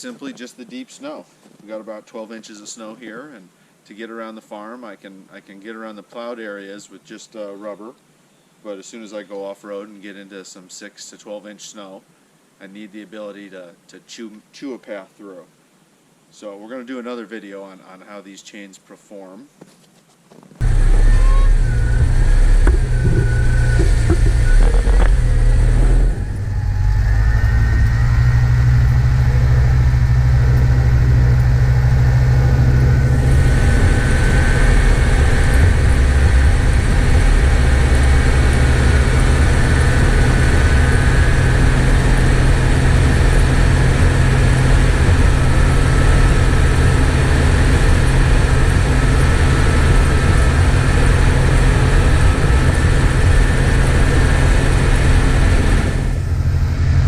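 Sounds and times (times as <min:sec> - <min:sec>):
steady high hiss: 0:00.0 - 0:57.0
car engine rumbling: 0:20.6 - 0:57.0.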